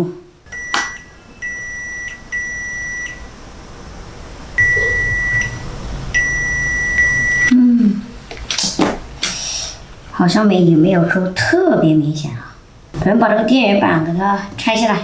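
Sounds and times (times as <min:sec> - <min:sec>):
multimeter continuity beeps: 0:00.5 - 0:03.4, 0:04.6 - 0:07.5.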